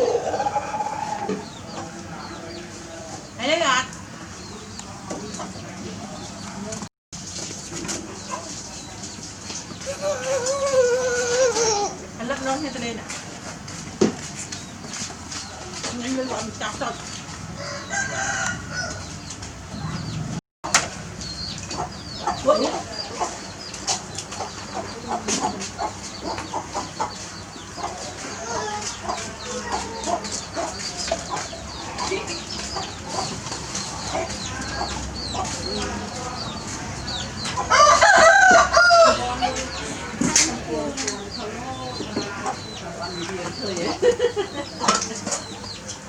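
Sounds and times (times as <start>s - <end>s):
rooster crowing: 0.0s - 1.4s, 17.6s - 19.1s, 37.7s - 39.5s
chickens clucking: 0.0s - 6.8s, 7.8s - 13.7s, 14.3s - 46.0s.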